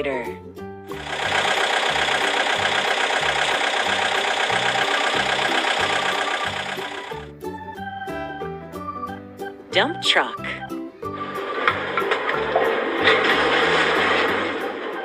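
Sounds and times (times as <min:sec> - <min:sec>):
children's background tune: 0:00.0 - 0:15.0
excavator engine rattling: 0:00.9 - 0:07.3, 0:11.4 - 0:15.0.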